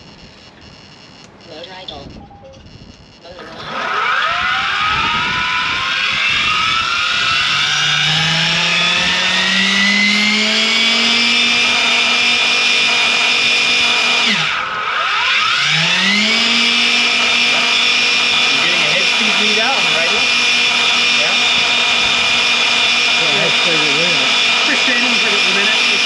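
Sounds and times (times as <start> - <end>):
helicopter motor and rotor whine: 0.0 - 26.0.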